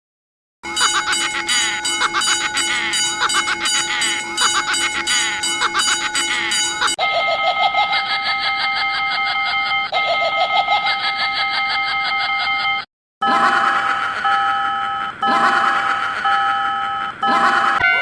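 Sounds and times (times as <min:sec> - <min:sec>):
electronic crossing warning bells: 0:00.6 - 0:07.0, 0:14.2 - 0:18.0.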